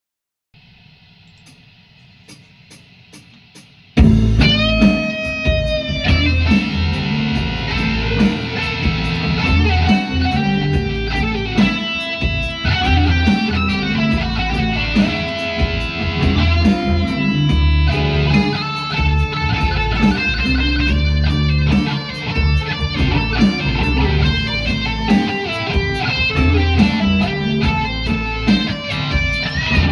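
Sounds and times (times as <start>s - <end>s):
rock band playing: 3.1s - 29.9s.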